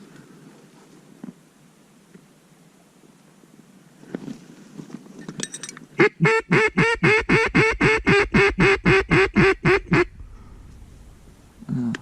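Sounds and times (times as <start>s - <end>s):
duck call quacks: 6.0s - 10.1s.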